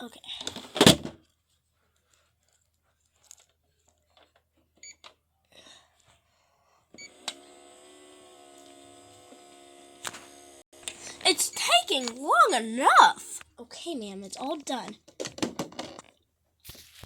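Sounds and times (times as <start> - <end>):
kitchen appliance humming: 7.0 - 13.4.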